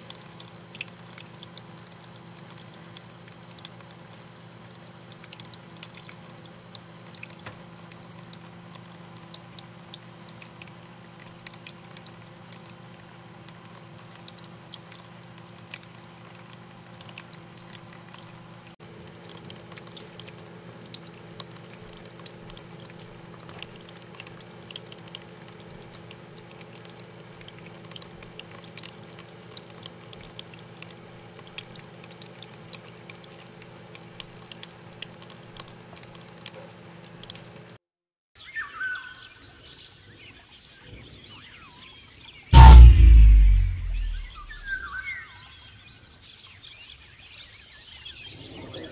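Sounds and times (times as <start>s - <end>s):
small waterfall trickling: 0.0s - 37.8s
water drips: 0.0s - 37.8s
steady low hum: 42.6s - 44.7s.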